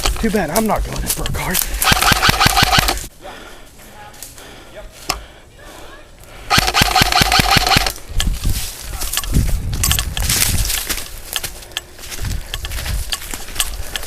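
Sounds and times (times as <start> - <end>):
airsoft gun rapid fire: 1.8 - 3.0, 6.5 - 8.0.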